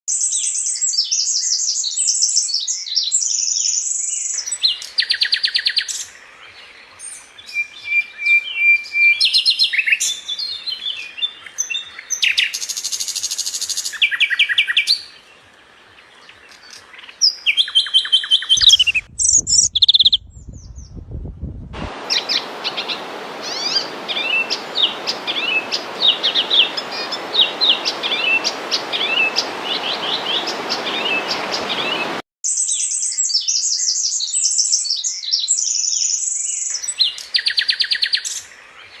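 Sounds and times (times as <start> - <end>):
small birds chirping: 0.2 - 21.0, 22.0 - 39.0
steady hiss: 21.8 - 32.2.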